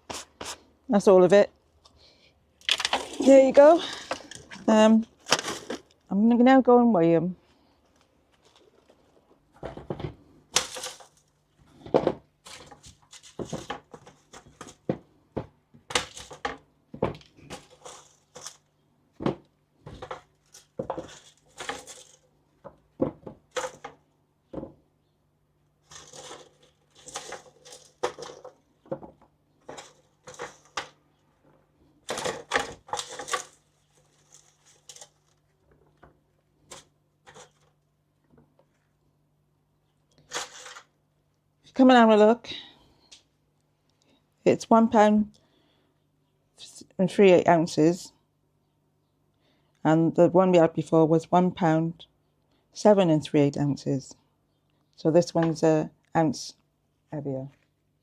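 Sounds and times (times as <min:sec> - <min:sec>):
potatoes knocking and clattering: 0:02.6 - 0:06.1, 0:08.3 - 0:25.0, 0:25.8 - 0:38.9.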